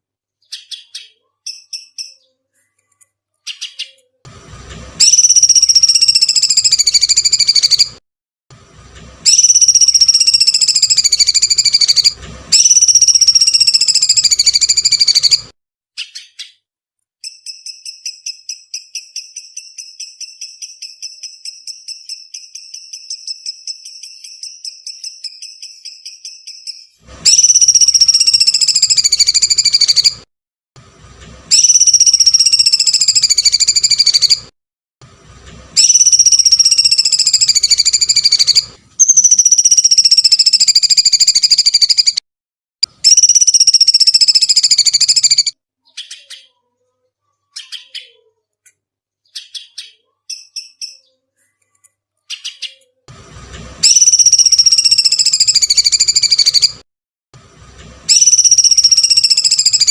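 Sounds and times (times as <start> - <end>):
bird fast trill: 0.4 - 2.4, 3.4 - 4.1, 5.0 - 8.0, 9.2 - 16.6, 17.2 - 30.3, 31.5 - 34.5, 35.8 - 42.2, 42.9 - 46.6, 49.3 - 51.2, 53.8 - 56.8, 58.1 - 59.9
bird high falling calls: 5.0 - 8.0, 9.3 - 15.4.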